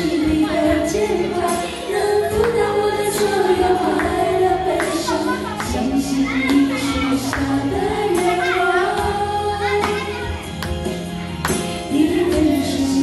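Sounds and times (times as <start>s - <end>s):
song accompaniment: 0.0s - 13.0s
percussion strikes: 9.8s - 12.5s.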